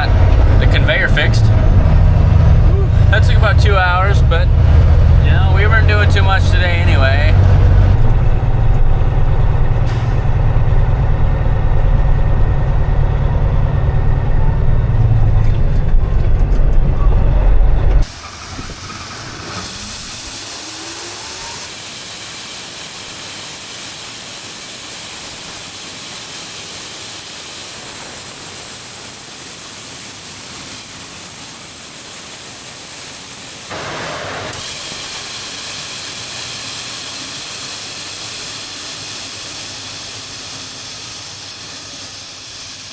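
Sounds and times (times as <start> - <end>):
truck engine rumbling: 0.0 - 23.8
rising whine: 0.0 - 30.9
rushing air hiss: 9.8 - 10.4, 18.0 - 42.9.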